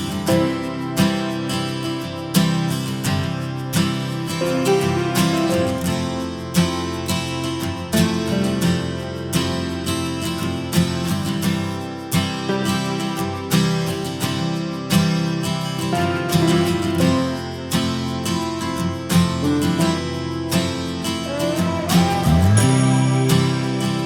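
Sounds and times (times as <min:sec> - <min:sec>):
strummed acoustic guitar music: 0:00.0 - 0:24.0.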